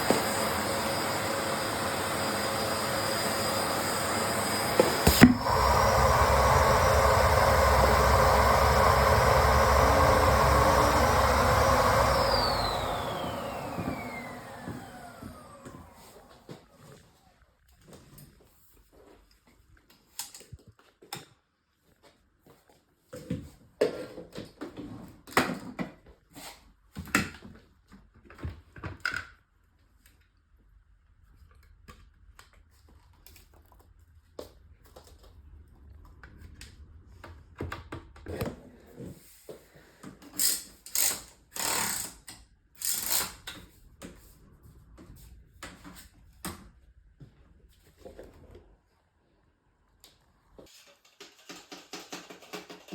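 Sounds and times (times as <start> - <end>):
clicks and knocks of hard objects: 50.7 - 52.9.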